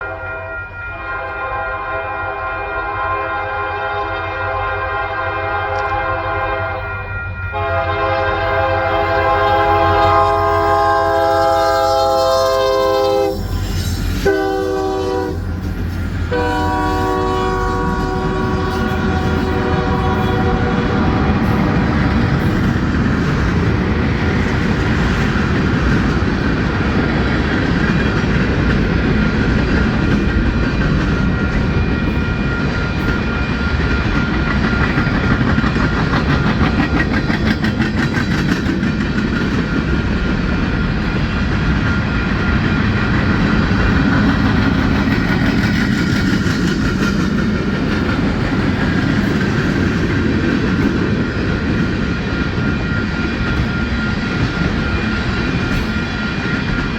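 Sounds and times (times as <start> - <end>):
train cars rumbling: 0.0 - 56.9
wheels clacking over rail joints: 33.9 - 56.9.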